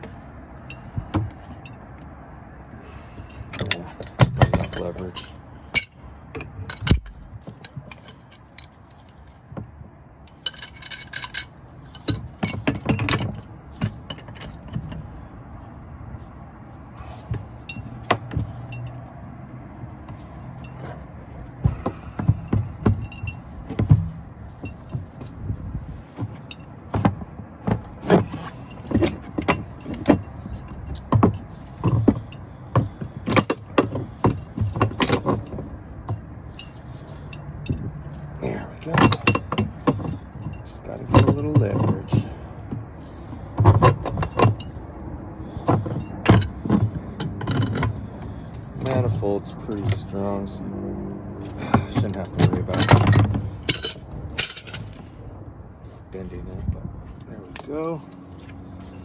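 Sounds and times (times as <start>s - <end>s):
wrench clinking on metal valve: 3.5s - 9.1s, 10.3s - 15.0s, 38.8s - 42.3s, 52.0s - 55.0s.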